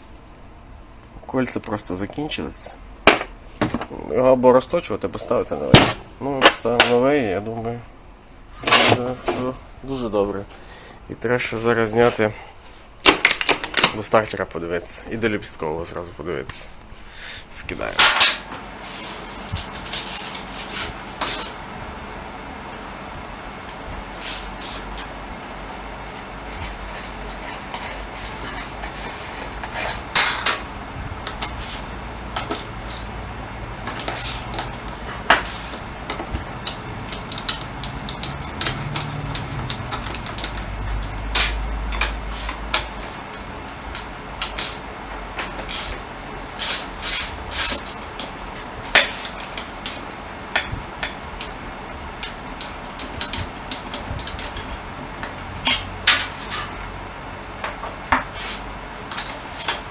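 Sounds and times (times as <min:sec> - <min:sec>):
metal tools clinking and knocking: 0:17.8 - 0:18.6, 0:26.6 - 0:33.1, 0:33.8 - 0:44.8, 0:52.2 - 0:56.7.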